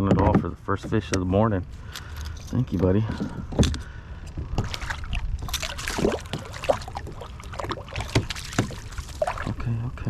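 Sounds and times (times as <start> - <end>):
water sloshing and dripping: 4.5 - 9.8.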